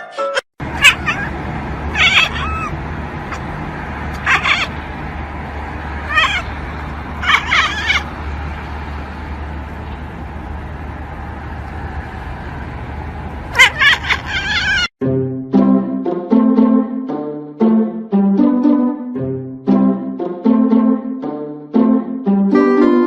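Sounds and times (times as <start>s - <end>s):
cat meowing: 0.8s - 1.3s, 1.9s - 2.7s, 4.2s - 4.8s, 6.0s - 6.5s, 7.2s - 8.1s, 13.6s - 14.9s.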